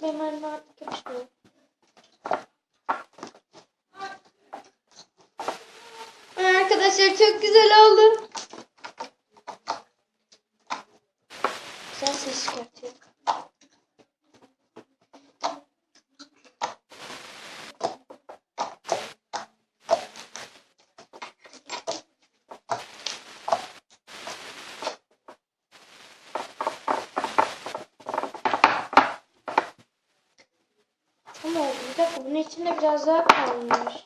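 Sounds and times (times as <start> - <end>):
slime squelching and popping: 8.2 - 14.1, 14.8 - 29.8.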